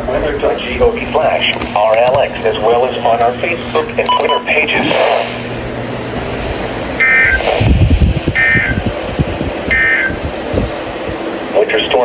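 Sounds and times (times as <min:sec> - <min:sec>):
warbling buzzy data bursts: 0:04.2 - 0:12.0
loud low rumbling: 0:04.4 - 0:11.6.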